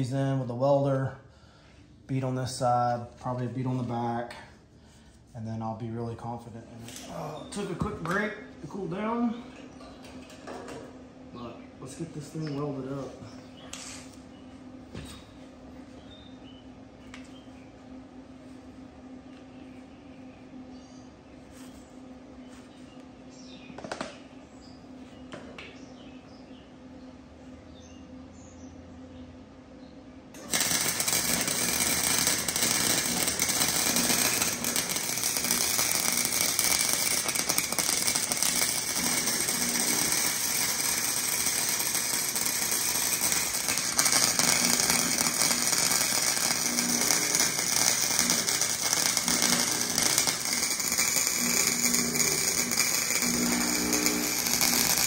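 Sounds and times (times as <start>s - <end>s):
arc welder crackling: 2.0s - 9.4s, 30.3s - 55.0s.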